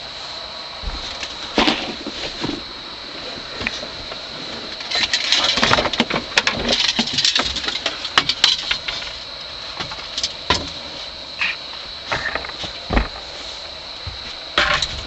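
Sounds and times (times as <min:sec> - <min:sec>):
steady high whine: 0:00.0 - 0:15.0
rattling and splashing: 0:03.5 - 0:11.1.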